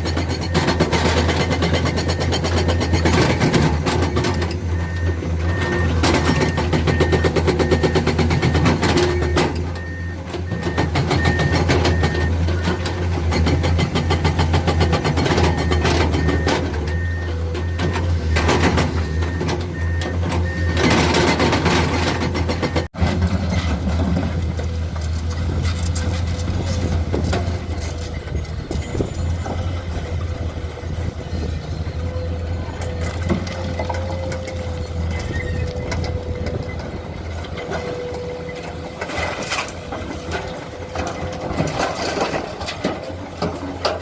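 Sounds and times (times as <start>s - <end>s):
heavy diesel engines running: 0.0s - 44.0s
faint repeated beep: 4.2s - 12.8s, 14.0s - 21.0s.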